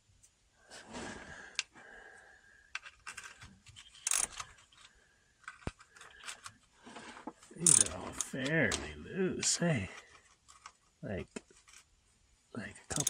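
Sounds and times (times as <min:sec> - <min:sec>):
metal parts clinking: 0:02.7 - 0:06.5, 0:07.6 - 0:09.0.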